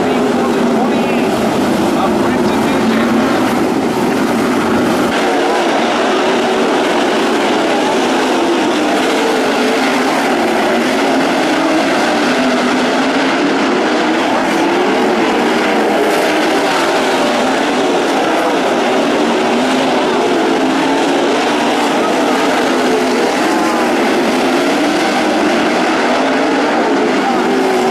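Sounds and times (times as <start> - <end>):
racing car engines droning: 0.0 - 27.9.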